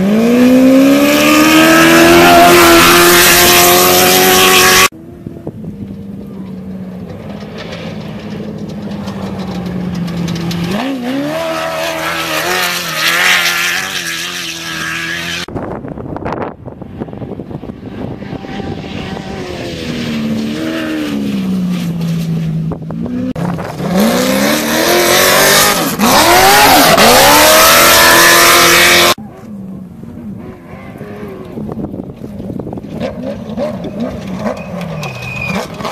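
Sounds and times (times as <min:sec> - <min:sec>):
race vehicle engines revving: 0:00.0 - 0:35.9.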